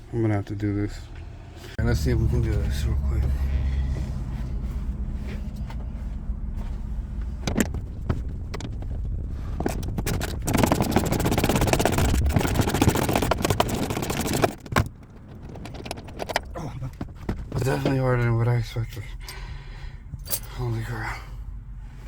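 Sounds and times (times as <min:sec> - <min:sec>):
steady low hum: 0:00.0 - 0:22.0
rapid clicking of bolt: 0:09.6 - 0:16.5.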